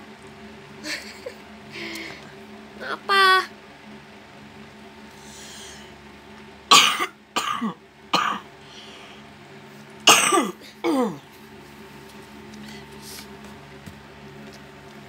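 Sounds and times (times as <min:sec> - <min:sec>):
woman coughing: 0:06.7 - 0:08.5, 0:10.1 - 0:11.2.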